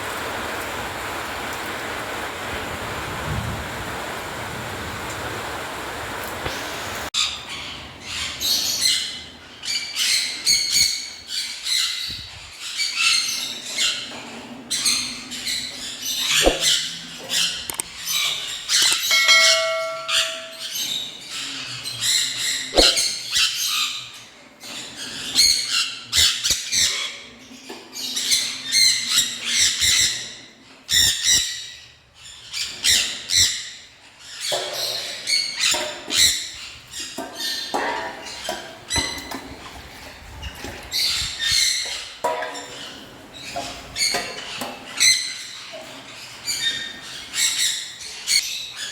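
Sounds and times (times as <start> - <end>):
cage birds chirping and squawking: 6.6 - 48.9
held bird note: 19.0 - 20.9.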